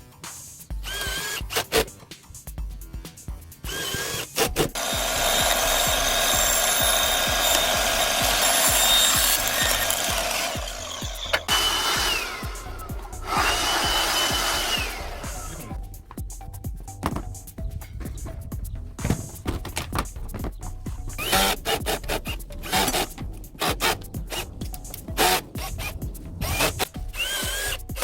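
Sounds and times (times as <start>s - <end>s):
power drill drilling: 0.8s - 1.8s, 3.7s - 15.8s, 21.2s - 24.4s, 25.2s - 25.9s, 26.5s - 28.0s.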